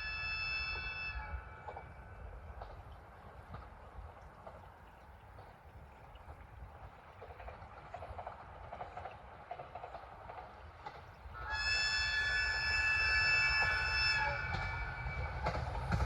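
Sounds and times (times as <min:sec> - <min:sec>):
train horn chord: 0:00.0 - 0:02.4, 0:11.4 - 0:16.0.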